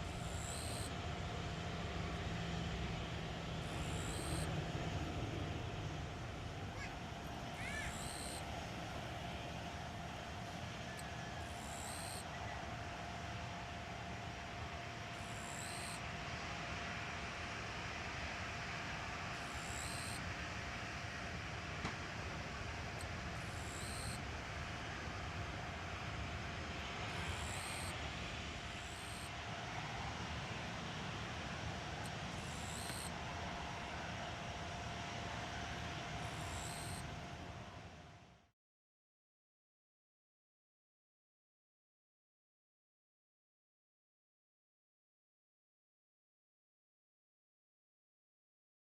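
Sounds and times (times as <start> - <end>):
distant jet engine roar: 0.0 - 38.2
faint steady whine: 0.0 - 38.5.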